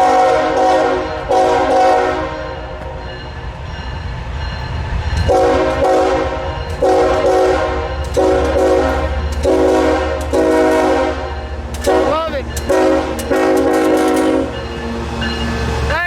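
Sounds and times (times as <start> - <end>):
locomotive air horn blasts: 0.0 - 2.7, 5.3 - 14.6
diesel locomotive rumble: 0.0 - 16.0.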